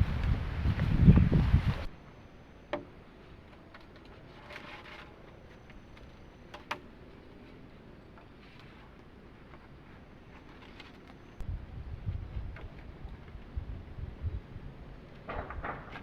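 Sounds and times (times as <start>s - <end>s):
wind buffeting microphone: 0.0s - 1.9s, 11.4s - 16.0s.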